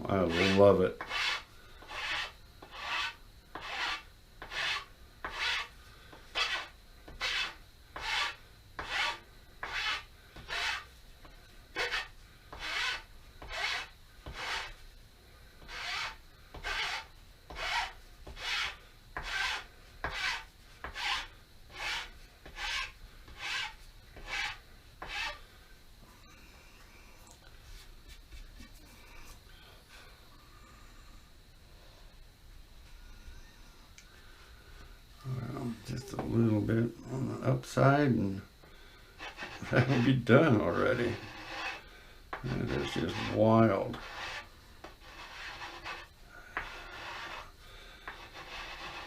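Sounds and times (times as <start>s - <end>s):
hand tool rasping wood: 0.1s - 10.9s, 11.7s - 14.8s, 15.6s - 25.4s, 39.2s - 49.0s.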